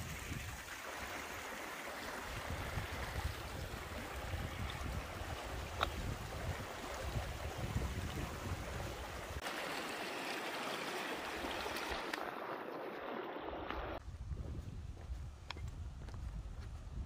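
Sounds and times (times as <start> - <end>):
mountain stream rushing: 0.0 - 14.0.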